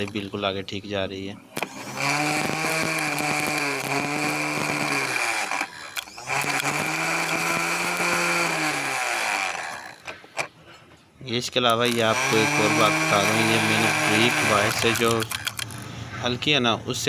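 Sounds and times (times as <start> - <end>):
starter motor whirring: 1.5 - 10.5, 11.7 - 15.8
sharp clicks: 1.5 - 10.6, 11.5 - 15.9.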